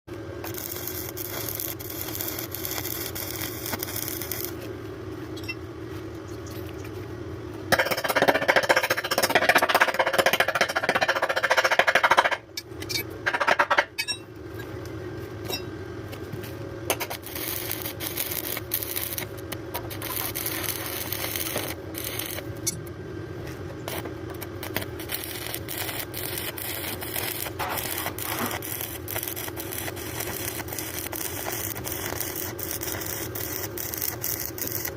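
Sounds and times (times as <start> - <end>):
steady hum: 0.1 - 34.9
welding arc crackling hiss: 0.4 - 4.7, 16.9 - 22.8, 23.8 - 34.9.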